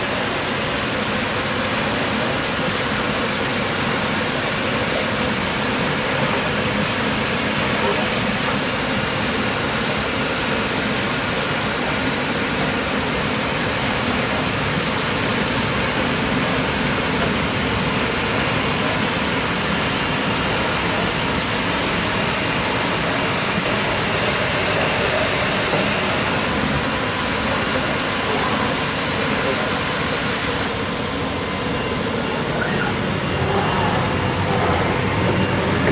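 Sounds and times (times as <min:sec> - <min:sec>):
cnc router running: 0:15.4 - 0:35.9.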